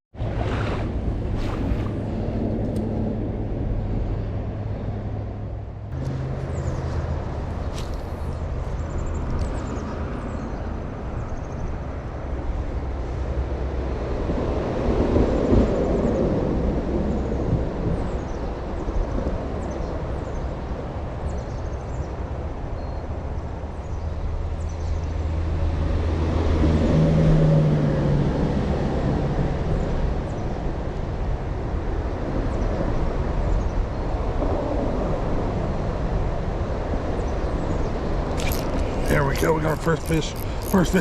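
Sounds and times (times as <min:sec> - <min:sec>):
traffic rumble: 0:00.2 - 0:15.2, 0:36.8 - 0:41.0.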